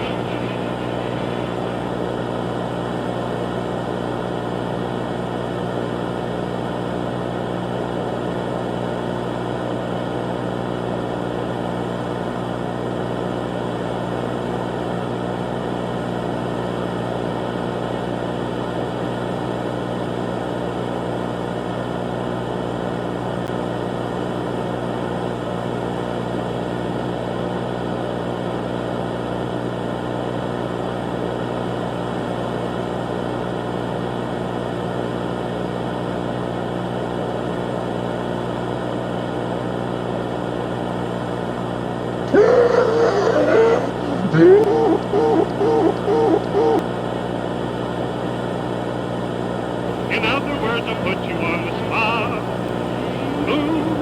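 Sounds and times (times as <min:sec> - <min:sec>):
low drone with hiss: 0:00.0 - 0:03.2.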